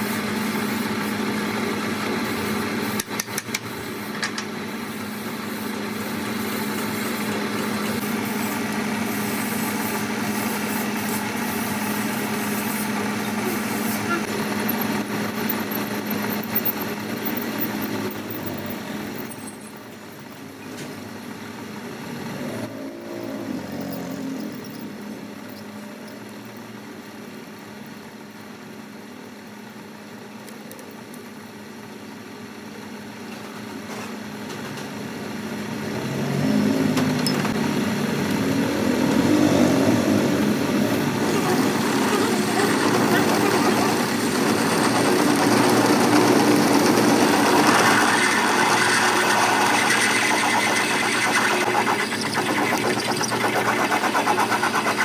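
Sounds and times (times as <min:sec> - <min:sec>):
workshop machine motor humming: 0:00.0 - 0:33.8, 0:35.0 - 0:55.0.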